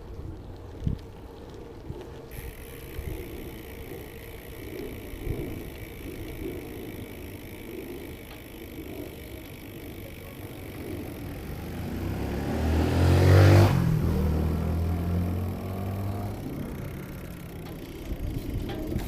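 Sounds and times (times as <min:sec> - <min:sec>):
car passing by: 0:11.5 - 0:17.2.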